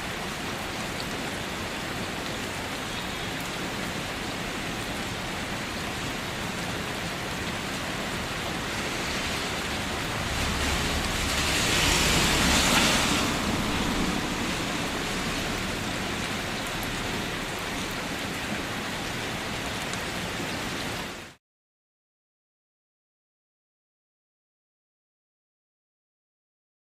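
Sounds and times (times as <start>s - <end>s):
rain falling: 0.0s - 21.4s
low rumble: 8.6s - 18.1s.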